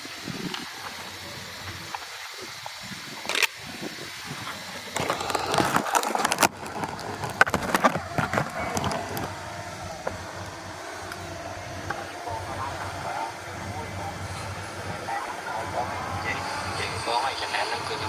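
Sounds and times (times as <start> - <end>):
low steady rumble: 0.1 - 18.0
loud rattling clatter: 4.9 - 10.4.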